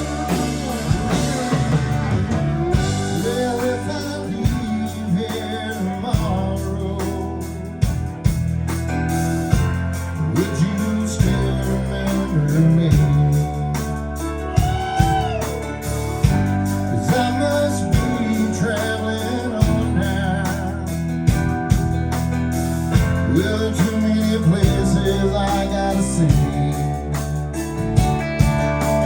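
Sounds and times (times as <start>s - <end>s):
lead guitar bending notes: 0.0s - 5.6s
live band playing: 0.0s - 29.0s.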